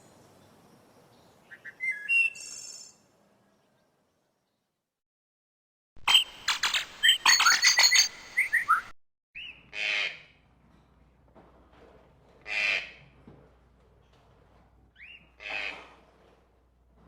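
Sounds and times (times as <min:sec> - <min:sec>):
bird chirps and whistles: 0:01.5 - 0:03.0, 0:06.1 - 0:09.6
harsh scratchy bird calls: 0:06.1 - 0:10.2, 0:14.9 - 0:15.8.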